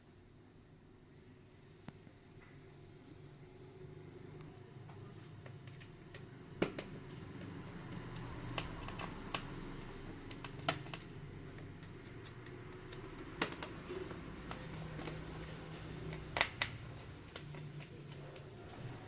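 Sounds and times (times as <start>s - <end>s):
tools clicking and tapping on laptop: 4.9s - 19.0s.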